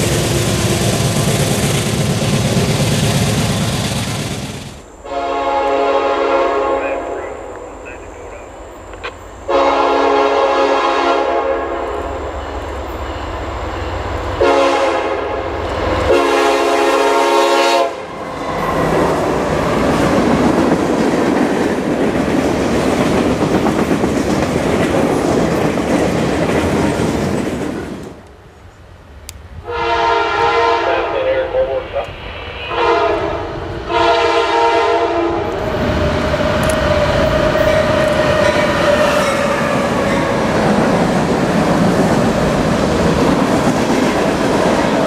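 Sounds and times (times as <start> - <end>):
train wheel and car noise: 0.0 - 5.0, 11.9 - 29.9, 31.6 - 45.0
train rushing past: 0.0 - 45.0
locomotive air horn blasts: 5.1 - 7.3, 9.5 - 12.1, 14.4 - 15.5, 16.1 - 18.1, 29.6 - 31.5, 32.7 - 35.5.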